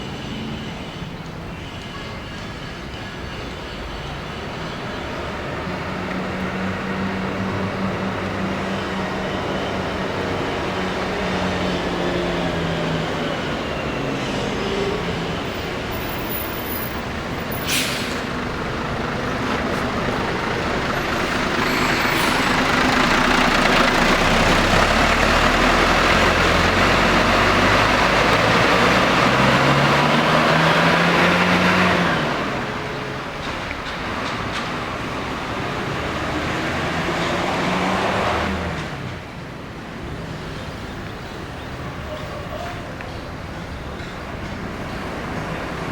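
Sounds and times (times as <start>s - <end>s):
diesel bus engine running: 4.0s - 39.8s
air brake hiss: 17.6s - 18.3s, 21.7s - 22.6s.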